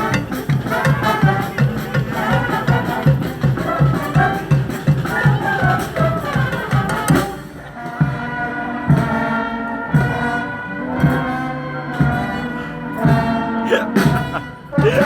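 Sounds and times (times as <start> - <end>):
street band playing: 0.0 - 15.0
heavy drumbeat: 13.7 - 15.0.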